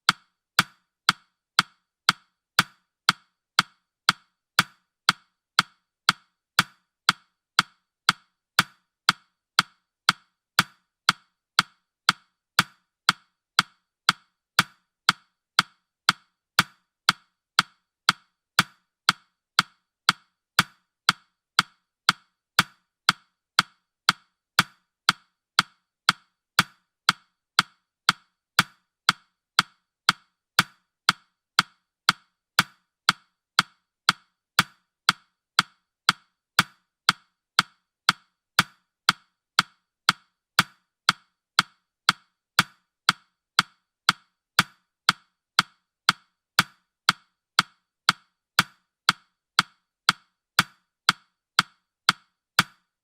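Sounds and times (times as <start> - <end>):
woody clock ticks: 0.0 - 53.0.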